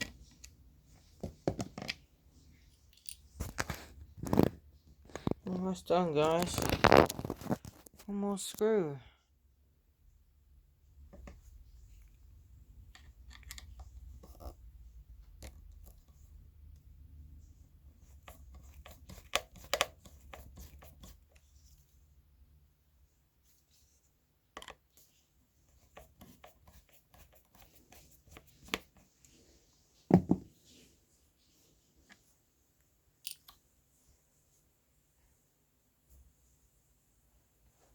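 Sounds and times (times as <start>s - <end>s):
clicks and scrapes of parts: 6.3s - 8.0s.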